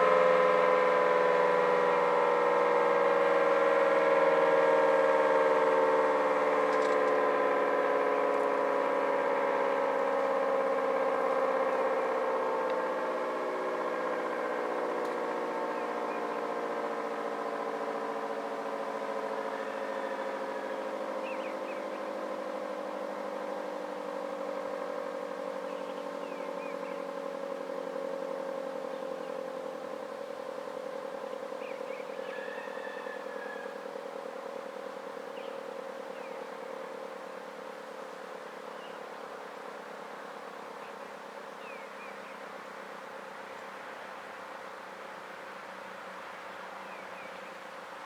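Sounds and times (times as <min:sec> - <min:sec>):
warning siren two-note chord: 0:00.0 - 0:21.0.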